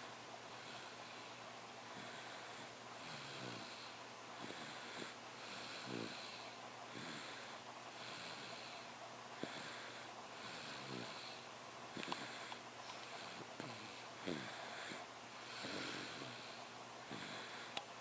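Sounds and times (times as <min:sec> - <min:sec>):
person snoring: 0:01.9 - 0:08.8, 0:09.4 - 0:17.7.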